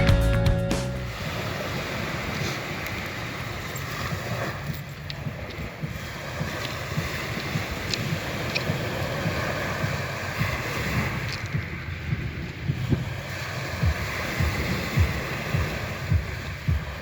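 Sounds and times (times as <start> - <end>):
wind buffeting microphone: 1.1 - 17.0
faint ticks: 4.1 - 10.0.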